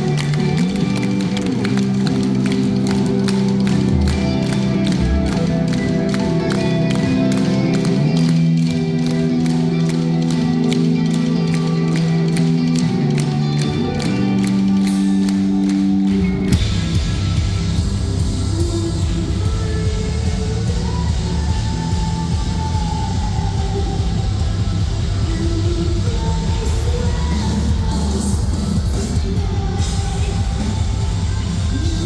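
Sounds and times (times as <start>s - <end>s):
sustained guitar chords: 0.0s - 18.5s
steady drum beat: 0.0s - 25.8s.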